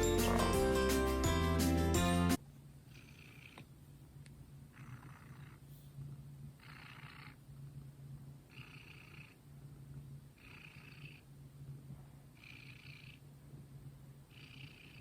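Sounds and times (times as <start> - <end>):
cat purring: 2.9 - 3.7, 4.7 - 7.4, 8.5 - 9.5, 10.3 - 11.3, 12.3 - 13.3, 14.3 - 15.0.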